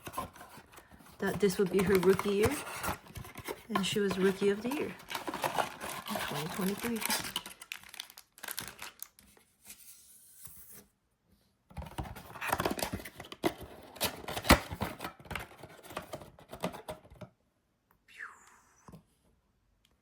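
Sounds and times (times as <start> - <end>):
cardboard box tearing: 0.0 - 8.9.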